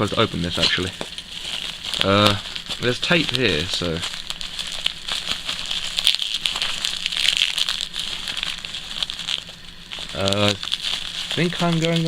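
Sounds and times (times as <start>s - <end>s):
tape being picked: 0.0s - 1.3s
packaging crinkling: 0.0s - 12.0s.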